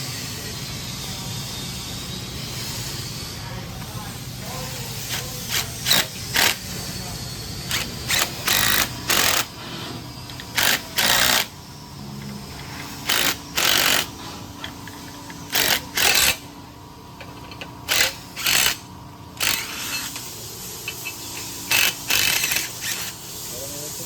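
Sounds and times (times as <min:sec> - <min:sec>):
power driver turning screws: 0:05.1 - 0:06.6, 0:07.7 - 0:09.5, 0:10.3 - 0:11.5, 0:12.2 - 0:16.4, 0:17.2 - 0:20.3, 0:21.0 - 0:23.2.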